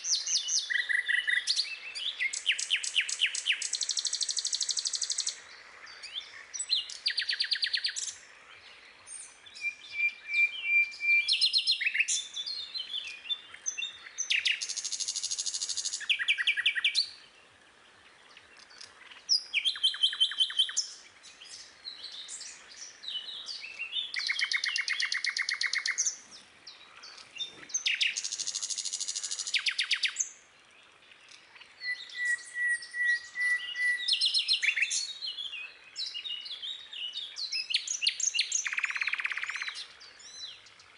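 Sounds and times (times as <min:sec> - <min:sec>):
bird trills and chirps: 0:00.0 - 0:17.3, 0:18.2 - 0:30.5, 0:31.1 - 0:40.9.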